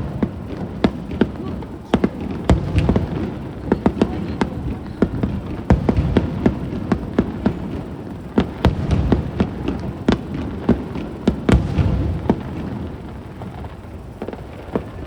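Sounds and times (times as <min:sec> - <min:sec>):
fireworks bursting: 0:00.0 - 0:15.0.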